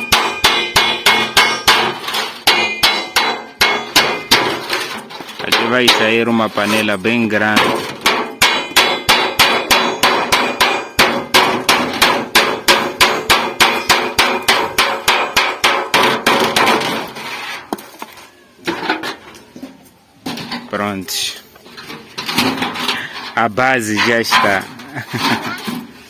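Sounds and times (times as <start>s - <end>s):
hammer striking sheet metal: 0.0s - 6.8s, 7.4s - 17.1s.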